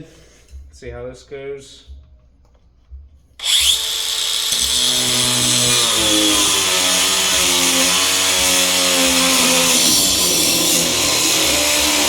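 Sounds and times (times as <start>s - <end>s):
angle grinder cutting steel: 3.4s - 12.0s.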